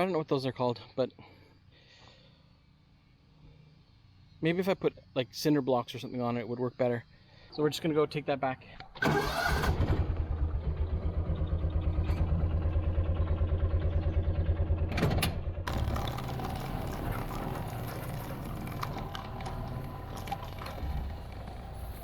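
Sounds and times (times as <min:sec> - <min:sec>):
small engine running: 0:09.0 - 0:22.0.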